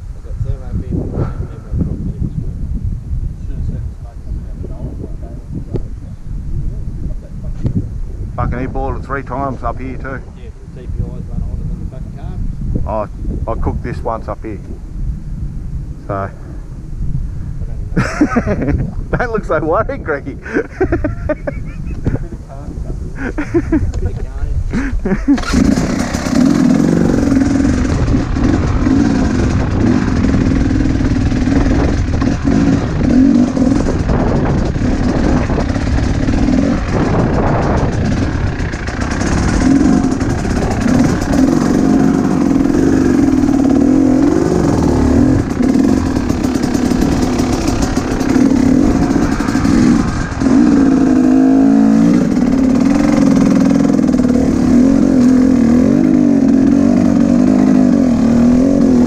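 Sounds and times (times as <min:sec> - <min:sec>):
dirt bike engine revving: 0:24.8 - 0:59.0.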